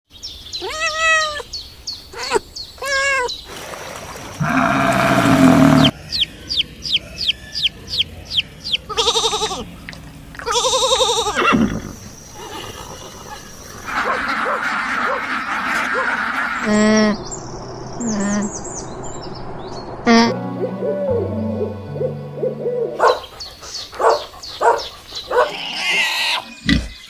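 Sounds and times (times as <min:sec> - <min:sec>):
long quavering bleats: 0:04.4 - 0:05.9, 0:08.9 - 0:09.7, 0:10.4 - 0:13.3
low drawn-out animal call: 0:04.4 - 0:06.0.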